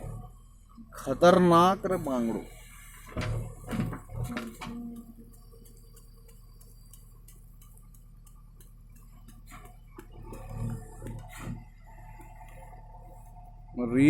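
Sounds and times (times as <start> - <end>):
steady low hum: 0.0 - 14.0
faint ticks: 4.0 - 11.3.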